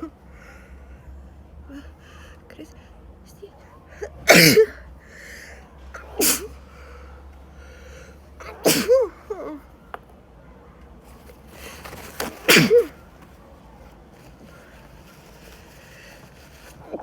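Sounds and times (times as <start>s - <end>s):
woman sneezing: 4.2s - 4.8s, 6.0s - 6.6s, 8.4s - 9.6s, 12.4s - 12.9s.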